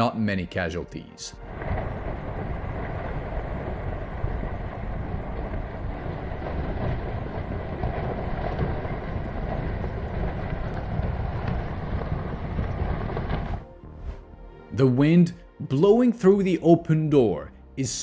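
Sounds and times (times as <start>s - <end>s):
landslide rumbling: 1.2s - 18.0s.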